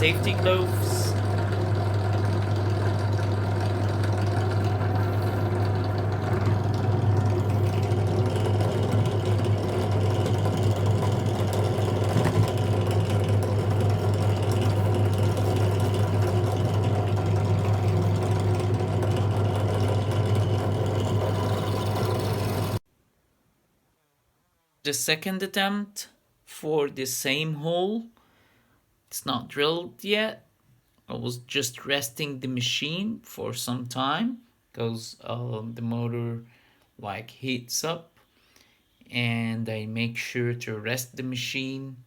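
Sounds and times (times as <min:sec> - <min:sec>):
drill bit cutting metal: 0:00.0 - 0:22.8
drill press motor hum: 0:00.0 - 0:22.8.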